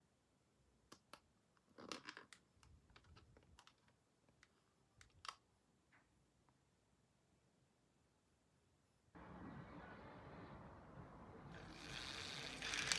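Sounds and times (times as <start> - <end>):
plastic packaging rustle: 11.8 - 12.9.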